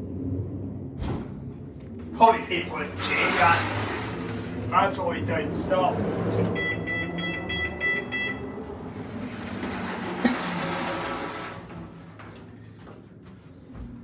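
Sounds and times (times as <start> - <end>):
lift low hum: 0.0 - 14.0
lift hissing: 8.9 - 12.2.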